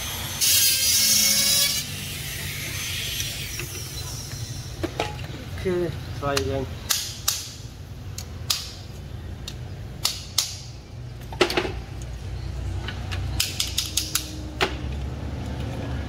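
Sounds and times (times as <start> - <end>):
tools clicking and knocking: 6.3 - 12.1, 12.8 - 15.0.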